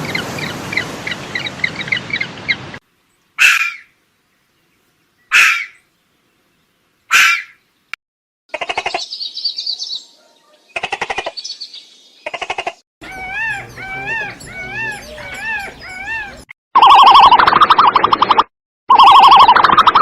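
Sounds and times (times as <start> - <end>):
bird whistling: 13.0 - 17.3
loud pulsing call: 13.0 - 17.3
buzzy pulsing animal calls: 13.0 - 17.5.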